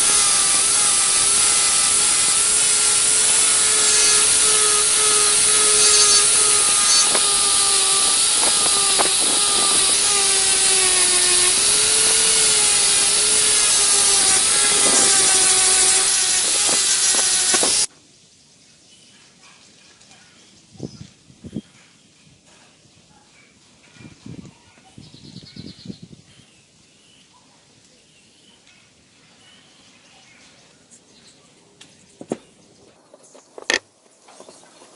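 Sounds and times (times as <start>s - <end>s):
power tool rasping and whining: 0.0s - 17.9s.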